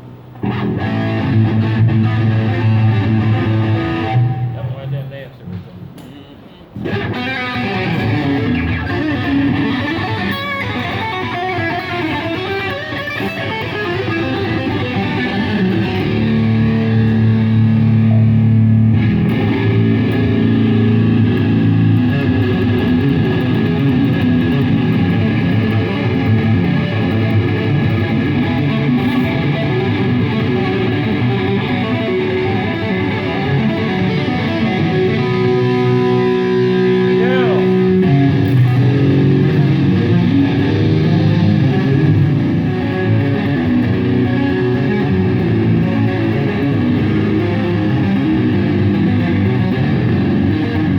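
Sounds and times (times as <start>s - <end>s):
amplified electric guitar: 0.0s - 50.9s
low bass notes: 14.4s - 50.9s.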